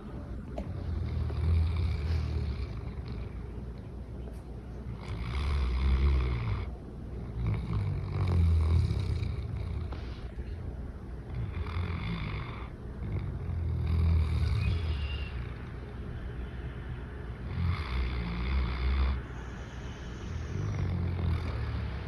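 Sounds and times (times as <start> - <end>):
dog snoring: 0.6 - 3.6, 4.9 - 10.3, 11.3 - 15.6, 17.4 - 22.0.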